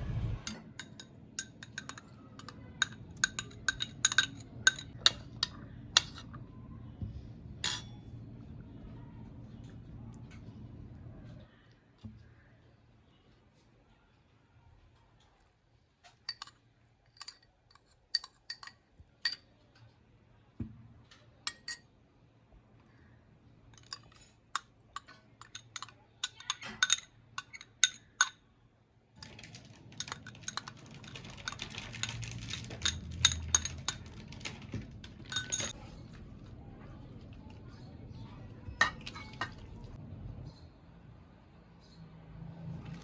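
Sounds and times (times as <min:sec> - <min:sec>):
utensils clinking against dishes: 0:00.5 - 0:06.4, 0:07.6 - 0:08.1, 0:16.3 - 0:19.5, 0:21.5 - 0:21.8, 0:23.8 - 0:28.4, 0:29.2 - 0:35.8.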